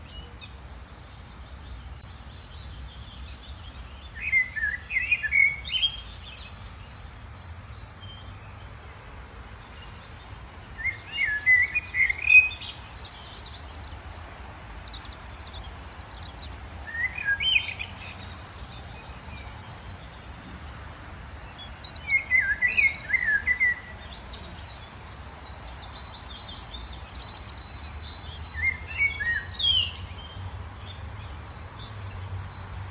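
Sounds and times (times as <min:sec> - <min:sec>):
songbird warbling: 0:09.6 - 0:20.2, 0:20.8 - 0:30.4.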